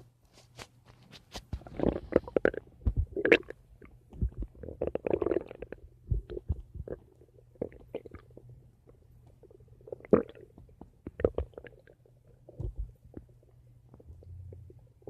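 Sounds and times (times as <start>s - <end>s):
stomach gurgling: 1.6s - 15.0s.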